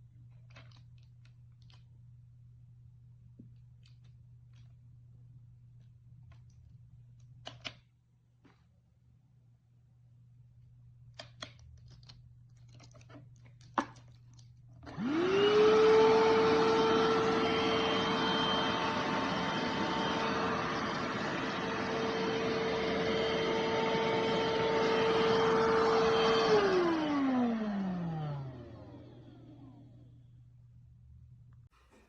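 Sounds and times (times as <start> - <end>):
vacuum cleaner motor whining: 14.9 - 30.1.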